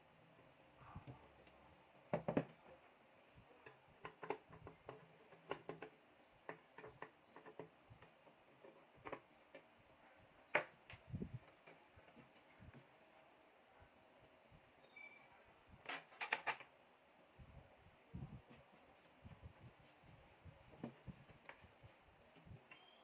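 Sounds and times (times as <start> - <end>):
computer parts clicking and knocking: 2.1 - 2.6, 3.6 - 9.7, 15.8 - 16.7.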